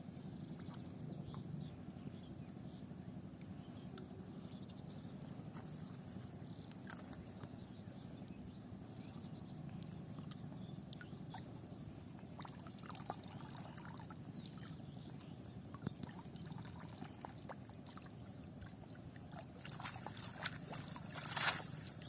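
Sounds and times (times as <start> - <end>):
low steady hum: 0.0 - 22.0
small splashes: 5.6 - 7.3, 12.1 - 22.0.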